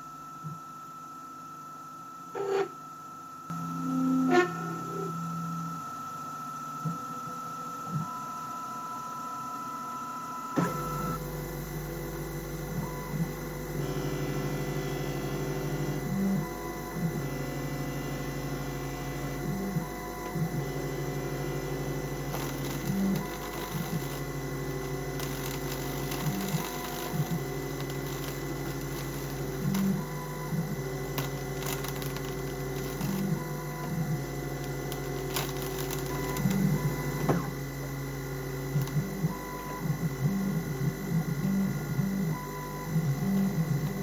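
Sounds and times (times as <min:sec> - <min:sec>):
cnc spindle whine: 0:00.0 - 0:44.0
axis motors shifting pitch: 0:02.4 - 0:02.9, 0:03.5 - 0:07.0, 0:18.9 - 0:37.8.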